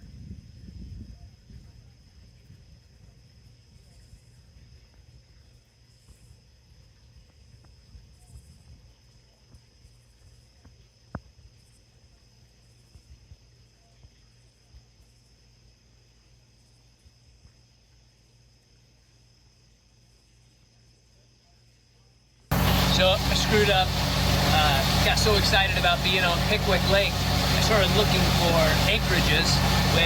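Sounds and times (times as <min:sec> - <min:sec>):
crickets trilling: 0:00.0 - 0:30.0
low rumble: 0:22.5 - 0:30.0.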